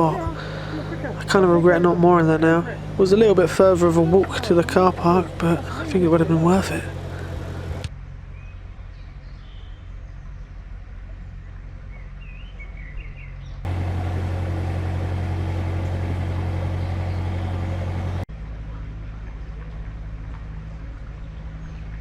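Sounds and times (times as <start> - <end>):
boat diesel engine running: 0.0 - 7.9, 13.7 - 22.0
birds chirping faintly: 0.0 - 18.3.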